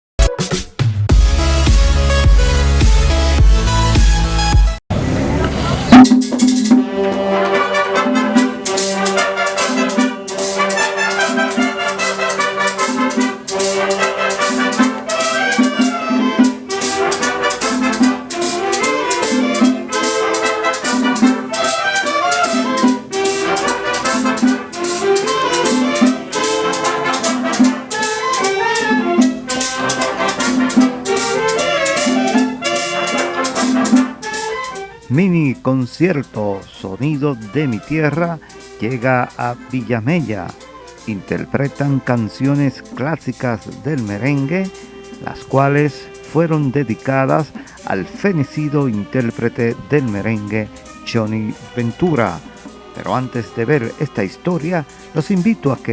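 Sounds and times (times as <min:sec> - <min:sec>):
brass latin dance music: 0:00.2 - 0:04.8, 0:05.6 - 0:55.9.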